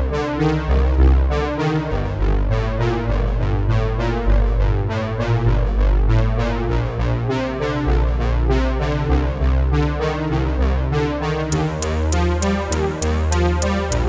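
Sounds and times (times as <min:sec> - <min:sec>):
synthesizer instrumental with beat: 0:11.5 - 0:14.0.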